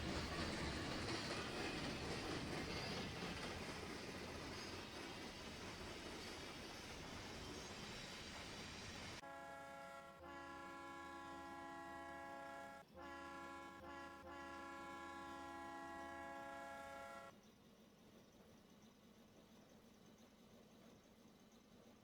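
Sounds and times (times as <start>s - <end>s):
steam locomotive whistle blasts: 9.2s - 17.3s.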